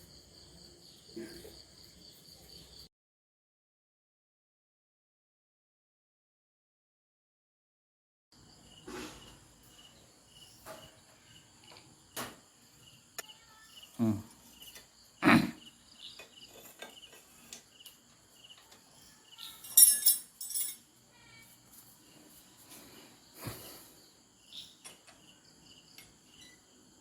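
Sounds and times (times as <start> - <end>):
crickets chirping: 0.0 - 2.9, 8.4 - 27.0
metal tools clanking: 19.4 - 20.9
metallic jangle: 19.4 - 20.9.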